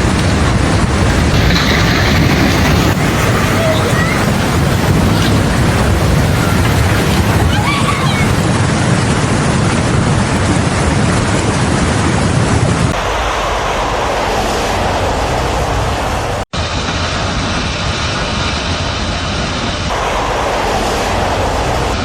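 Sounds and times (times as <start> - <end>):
floodwater roaring: 0.0 - 22.0
wind buffeting microphone: 0.0 - 22.0.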